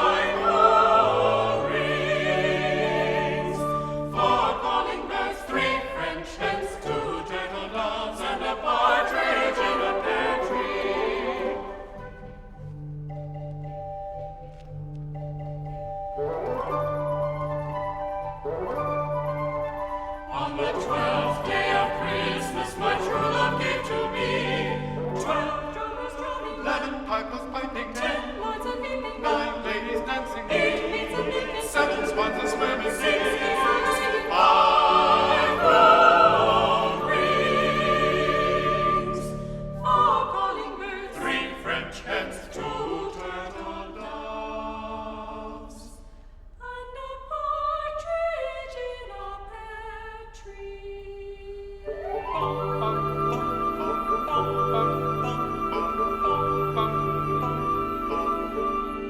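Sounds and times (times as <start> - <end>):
choir singing with orchestra: 0.0 - 13.1, 15.4 - 59.0.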